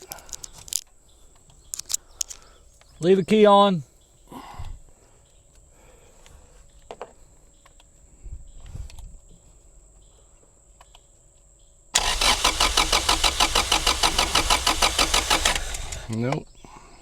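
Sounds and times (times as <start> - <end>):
engine cranking on starter: 12.0 - 16.2.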